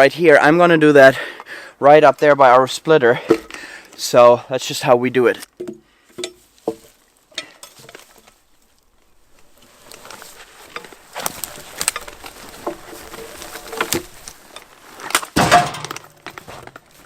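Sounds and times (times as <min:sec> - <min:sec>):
logs knocking and clunking: 0:03.2 - 0:03.6, 0:05.5 - 0:17.0
loud thud: 0:15.4 - 0:16.0.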